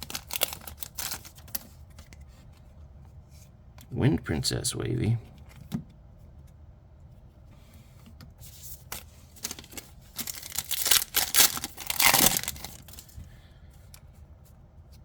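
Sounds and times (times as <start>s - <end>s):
foil wrapper tearing and crinkling: 0.0s - 1.7s, 8.9s - 13.2s.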